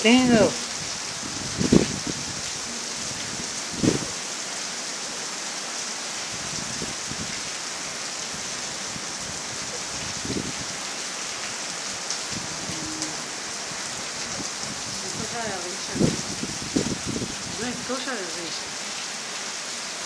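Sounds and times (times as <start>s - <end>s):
steady rain falling: 0.0s - 20.0s.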